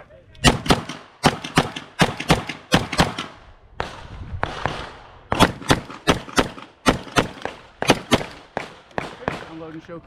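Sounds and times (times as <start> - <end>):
pistol shots: 0.4 - 9.7.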